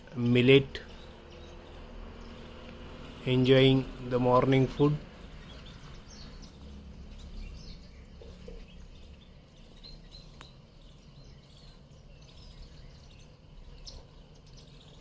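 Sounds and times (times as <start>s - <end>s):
low background rumble: 0.0s - 15.0s
faint high bird chirps: 4.6s - 15.0s.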